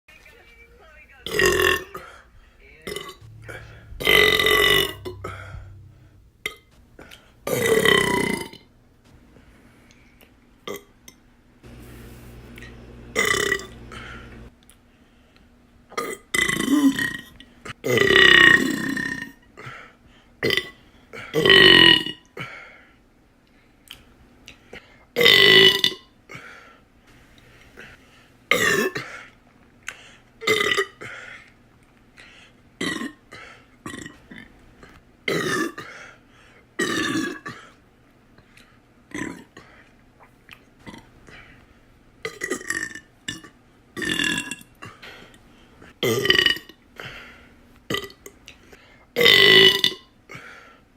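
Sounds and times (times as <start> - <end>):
person burping: 1.3 - 2.1, 2.9 - 6.6, 7.5 - 8.6, 13.2 - 14.2, 46.0 - 46.7, 49.2 - 50.0.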